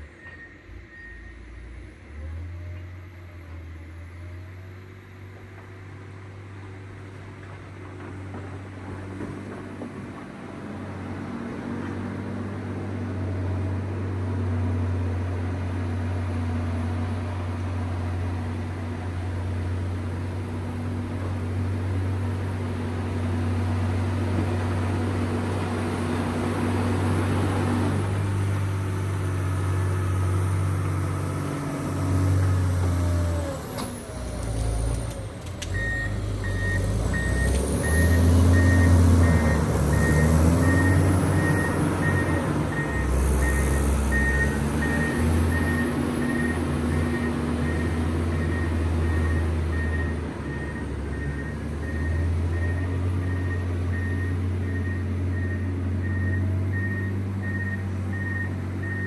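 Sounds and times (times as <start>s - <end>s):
reversing alarm beeping: 0.0s - 2.2s, 35.6s - 59.0s
diesel engine running under load: 0.0s - 59.0s.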